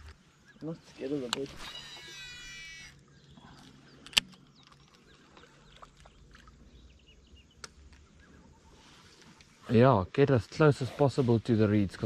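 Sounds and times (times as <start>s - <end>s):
faint bird chirps: 0.1s - 9.8s
high sweeping calls: 0.4s - 3.1s
sharp clicks: 4.0s - 4.8s.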